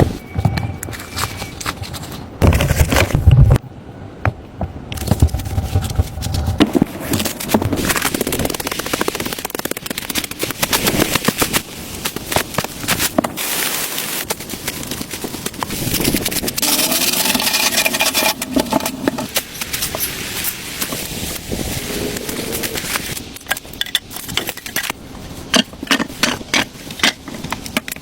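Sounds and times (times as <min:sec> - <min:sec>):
sharp cracks and knocks: 0:04.3 - 0:13.4.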